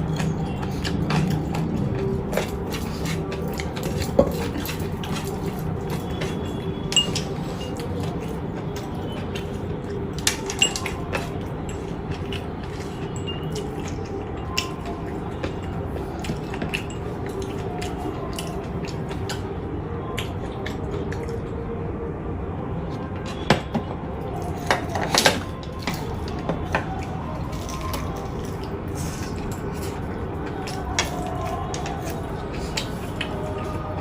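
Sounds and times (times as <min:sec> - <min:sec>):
utensil clinking on plate: 0:00.0 - 0:08.4, 0:10.1 - 0:18.6
low background noise: 0:00.0 - 0:34.0.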